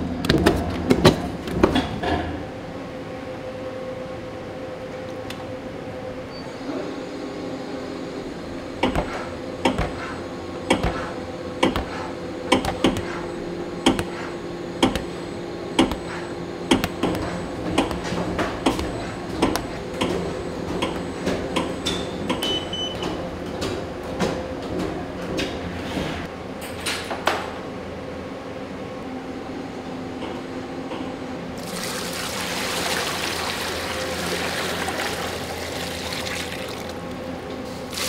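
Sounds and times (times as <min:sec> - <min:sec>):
machine humming: 0:03.0 - 0:25.3.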